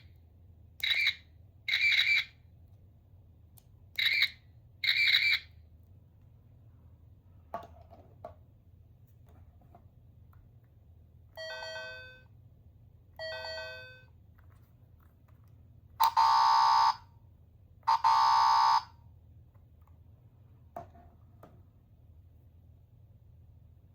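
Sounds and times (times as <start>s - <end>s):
loud buzzer blasts: 16.0s - 17.0s, 17.9s - 18.9s.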